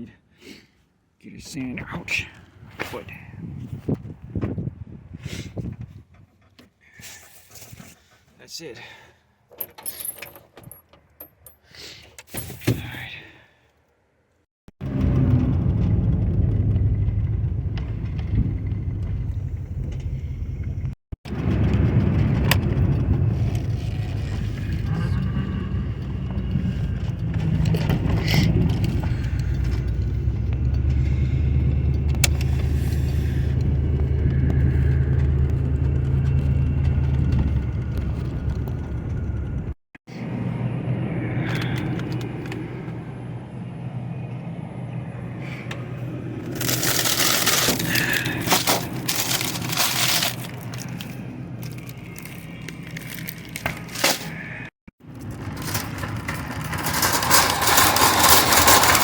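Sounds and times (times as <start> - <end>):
car engine humming: 14.8 - 54.1
road noise: 14.8 - 59.0.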